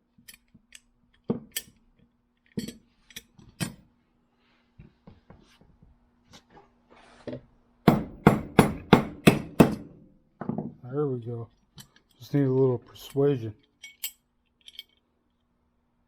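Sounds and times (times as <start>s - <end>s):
metal parts clicking: 13.0s - 15.0s.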